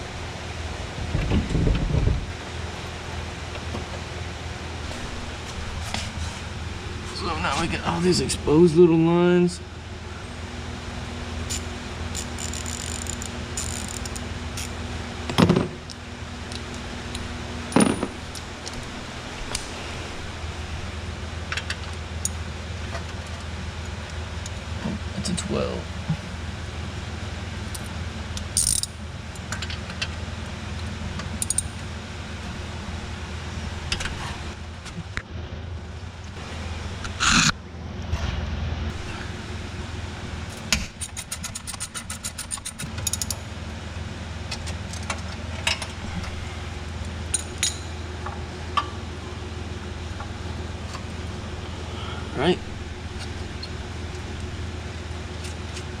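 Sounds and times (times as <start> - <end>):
steady low hum: 0.0 - 56.0
ratchet wrench clicking: 11.5 - 14.7, 28.6 - 28.9, 41.0 - 43.4
metal tools clanking: 17.7 - 18.9, 41.0 - 43.4, 47.3 - 48.0.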